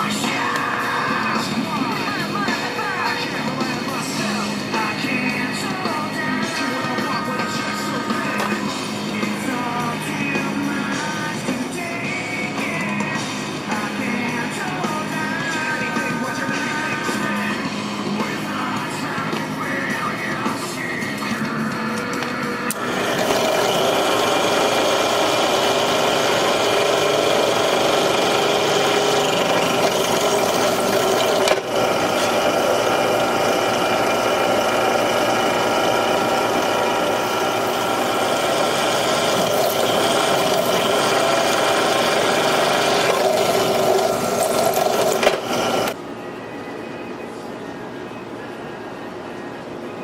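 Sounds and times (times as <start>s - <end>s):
power tool grinding metal: 21.9s - 46.0s.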